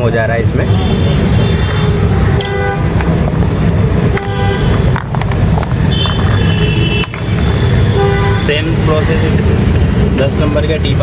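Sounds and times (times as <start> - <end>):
traffic rumble: 0.0 - 11.0
car horns honking: 0.6 - 3.2, 3.9 - 9.7.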